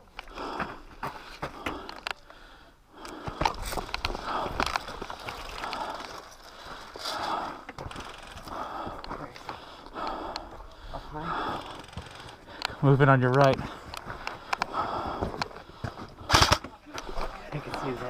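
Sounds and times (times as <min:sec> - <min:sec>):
footsteps crunching on rocky ground: 0:03.1 - 0:10.5, 0:11.3 - 0:16.2
gear rustling: 0:03.8 - 0:09.4.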